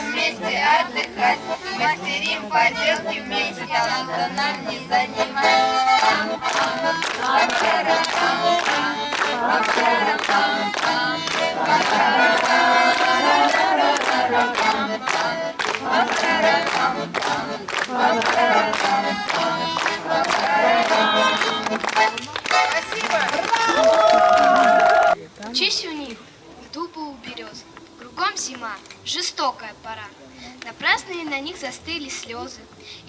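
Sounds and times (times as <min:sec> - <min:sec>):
group singing over a steady beat: 0:00.0 - 0:22.0.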